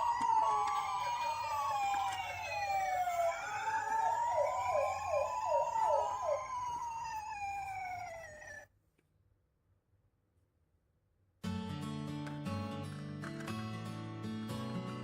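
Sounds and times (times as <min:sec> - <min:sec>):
short falling siren yelps: 0:00.0 - 0:08.6
toy ambulance sirens wailing: 0:00.0 - 0:08.6.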